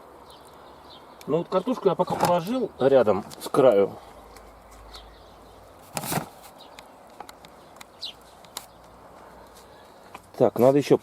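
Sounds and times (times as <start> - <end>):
low steady background noise: 0.0 - 11.0
short thump or rustle: 5.8 - 6.6.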